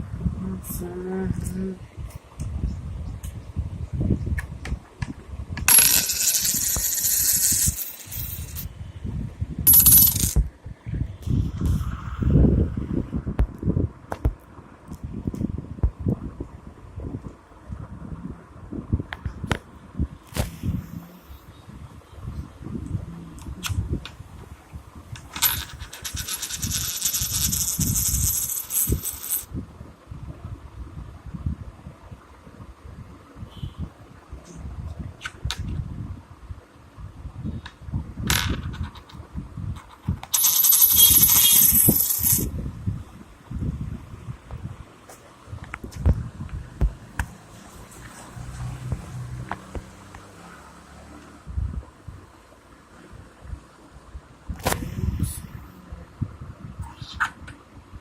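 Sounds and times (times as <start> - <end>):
metal coin ringing: 5.7 - 8.7, 9.7 - 10.4, 25.3 - 29.5, 40.3 - 42.5
low rumble: 9.0 - 14.1.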